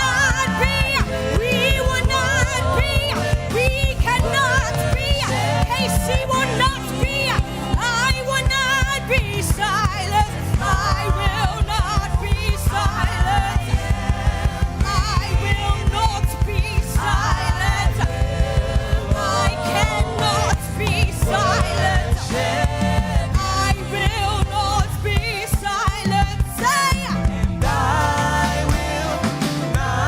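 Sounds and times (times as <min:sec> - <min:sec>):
band with bass and drums: 0:00.0 - 0:30.0
people singing: 0:00.0 - 0:30.0.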